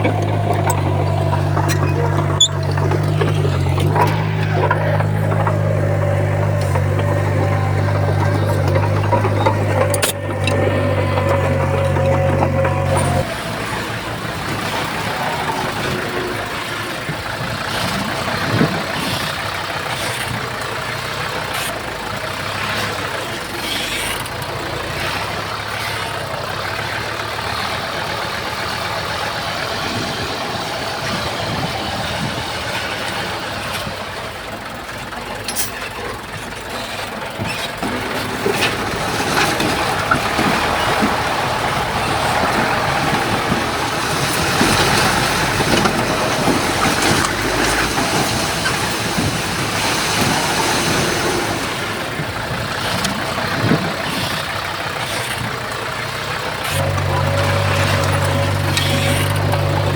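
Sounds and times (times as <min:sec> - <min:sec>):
bulldozer diesel engine running: 0:00.0 - 0:59.9.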